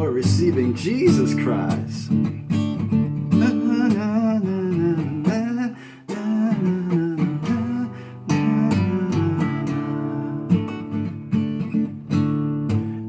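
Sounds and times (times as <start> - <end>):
wordless singing voice: 0.0 - 2.2, 3.3 - 10.8
acoustic guitar strumming: 0.0 - 13.0.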